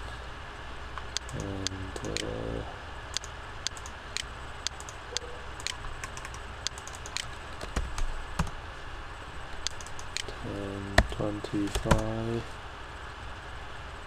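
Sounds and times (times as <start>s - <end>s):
low hum: 0.0s - 14.0s
mouse and keyboard clicking: 1.0s - 2.3s, 3.1s - 8.5s, 9.6s - 10.4s.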